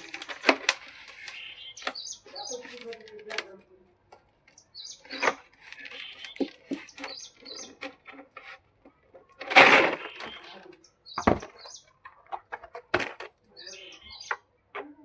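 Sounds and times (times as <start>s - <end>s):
beak clicking on food: 4.5s - 7.9s.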